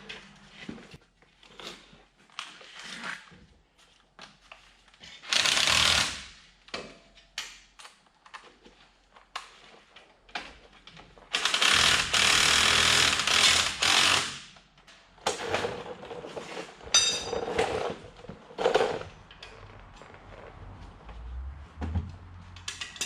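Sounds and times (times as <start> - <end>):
pneumatic impact wrench rattling: 5.3 - 6.4, 11.3 - 14.5
metal tools clanking: 16.9 - 18.0.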